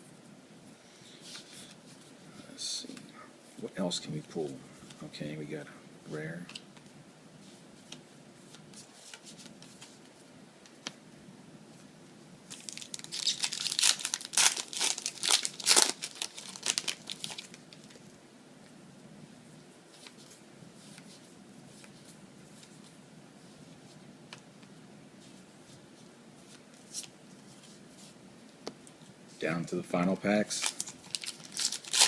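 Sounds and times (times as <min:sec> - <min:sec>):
foil wrapper crinkling and tearing: 0:12.5 - 0:18.0, 0:30.5 - 0:32.0.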